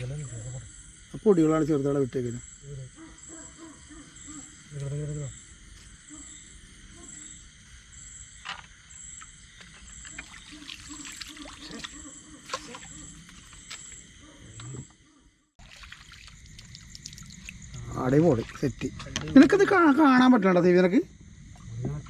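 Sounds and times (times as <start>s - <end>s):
high insect buzz: 0.0s - 22.0s
night insects chirping: 0.0s - 22.0s
water splashing from wading: 10.1s - 13.8s, 15.6s - 19.0s.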